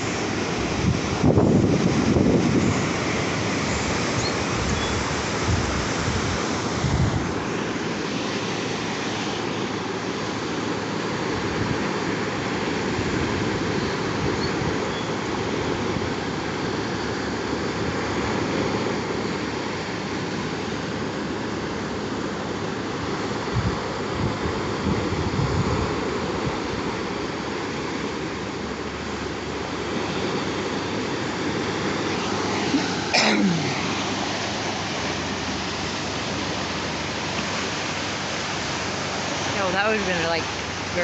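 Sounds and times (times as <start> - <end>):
wind buffeting microphone: 0.0 - 8.0, 23.4 - 27.6
waves washing onto shore: 0.0 - 41.0.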